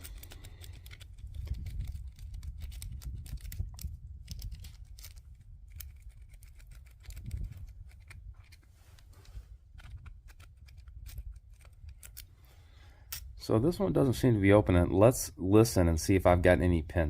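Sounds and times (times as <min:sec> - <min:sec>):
lock pick clicking and scratching: 0:00.0 - 0:12.3, 0:13.0 - 0:13.4.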